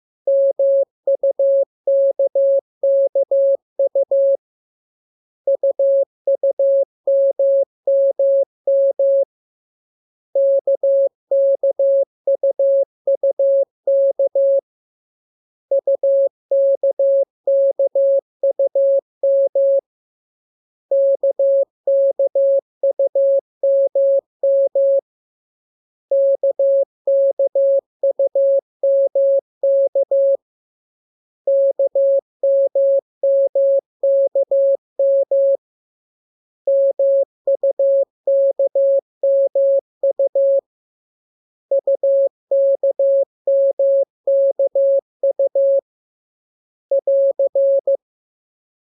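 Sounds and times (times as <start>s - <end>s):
morse code beeps: 0.3s - 4.4s, 5.5s - 9.3s, 10.4s - 14.6s, 15.7s - 19.8s, 20.9s - 25.0s, 26.1s - 30.4s, 31.5s - 35.6s, 36.7s - 40.6s, 41.7s - 45.8s, 46.9s - 48.0s.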